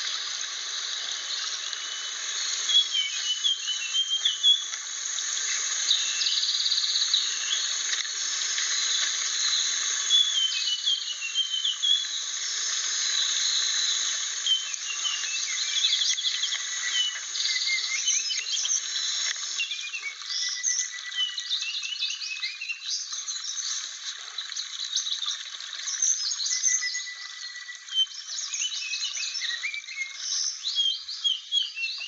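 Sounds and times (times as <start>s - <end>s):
steady hiss: 0.0s - 22.2s
bird twittering song: 1.0s - 7.9s, 8.6s - 32.0s.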